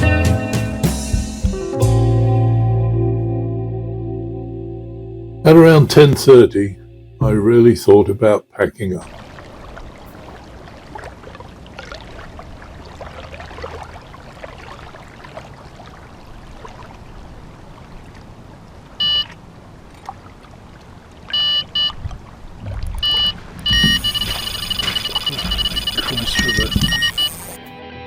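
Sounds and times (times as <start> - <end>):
electronic bite alarm beeping: 23.0 - 27.7.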